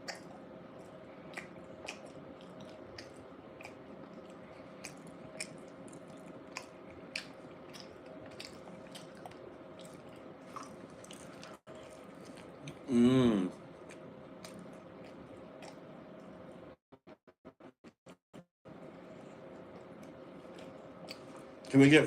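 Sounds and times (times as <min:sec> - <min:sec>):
wet chewing mouth smacks: 0:01.3 - 0:12.8.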